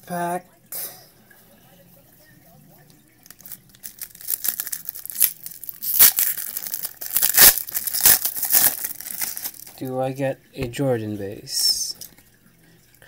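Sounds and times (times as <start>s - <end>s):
card pack wrapper crinkling: 3.3s - 9.8s.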